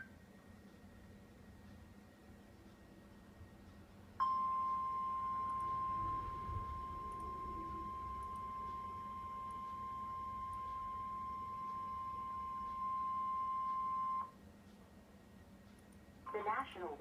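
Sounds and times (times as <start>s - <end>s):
steady high alarm tone: 4.2s - 14.3s
faint radio hiss: 16.2s - 17.0s.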